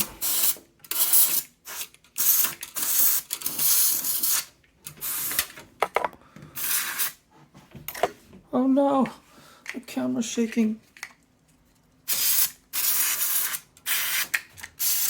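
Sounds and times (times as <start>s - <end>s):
compressed air hissing blasts: 6.6s - 7.2s, 12.1s - 15.0s.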